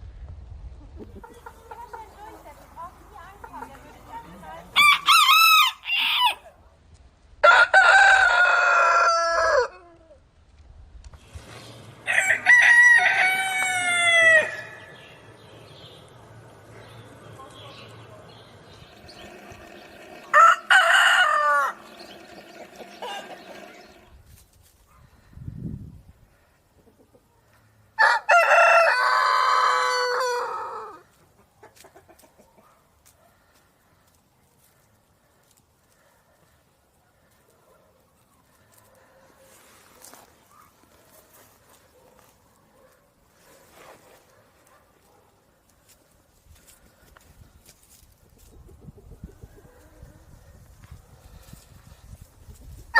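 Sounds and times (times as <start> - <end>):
rooster crowing: 4.8 - 6.5, 7.4 - 9.8, 12.1 - 14.8, 19.0 - 24.0, 28.0 - 31.0.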